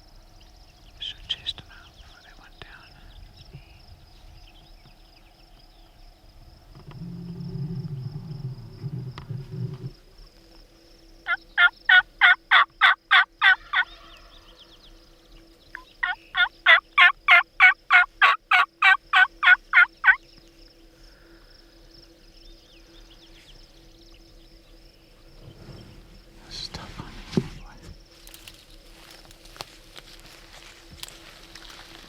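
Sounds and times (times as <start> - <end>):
turkey yelping: 16.0 - 20.2.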